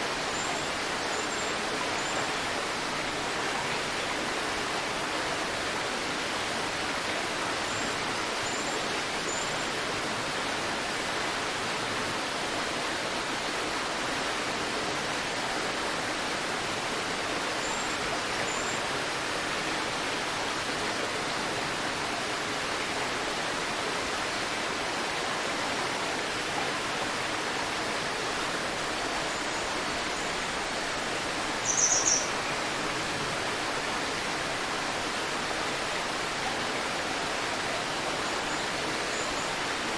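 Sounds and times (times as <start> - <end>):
river water flowing: 0.0 - 39.9
small birds chirping: 31.6 - 32.4.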